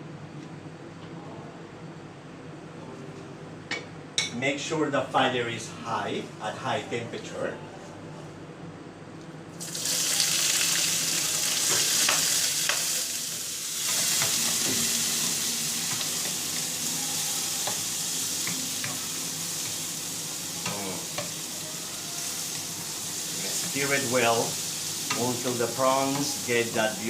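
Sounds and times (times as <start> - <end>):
seafood sizzling in hot oil: 9.6 - 27.0.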